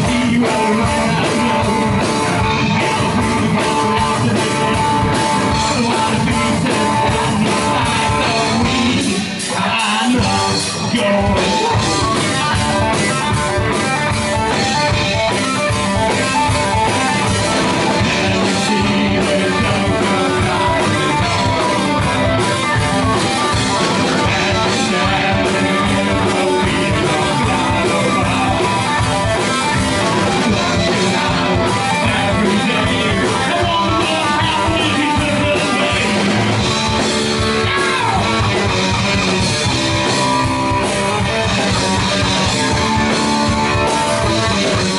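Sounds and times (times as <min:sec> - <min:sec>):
rock music with guitar and drums: 0:00.0 - 0:44.9.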